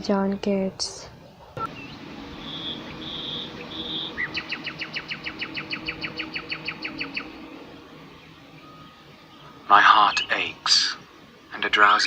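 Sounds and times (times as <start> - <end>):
songbird singing: 0.0 - 12.0.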